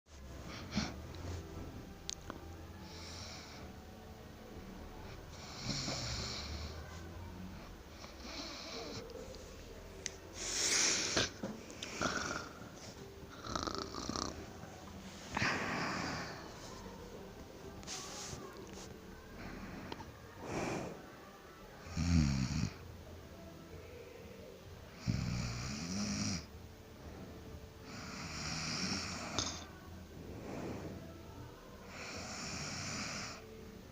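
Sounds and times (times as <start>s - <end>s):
person snoring: 10.4s - 14.4s, 15.3s - 16.6s, 24.9s - 26.5s, 27.8s - 31.1s
low steady hum: 29.2s - 31.9s.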